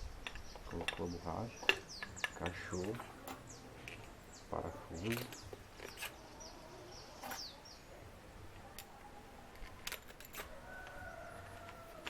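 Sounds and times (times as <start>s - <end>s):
bird chirping: 0.0s - 12.0s
clicks of small metal parts: 0.2s - 4.2s, 9.5s - 11.0s.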